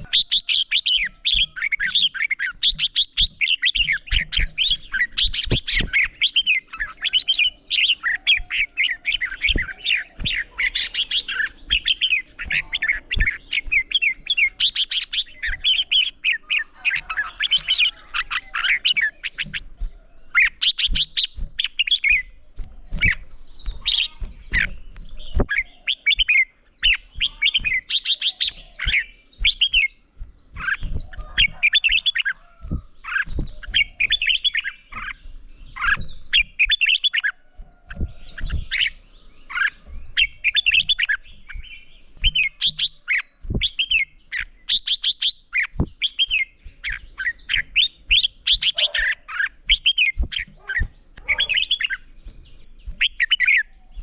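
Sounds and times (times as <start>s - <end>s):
birds singing whistled phrases: 0.0s - 54.0s
soft low thumps: 11.2s - 54.0s.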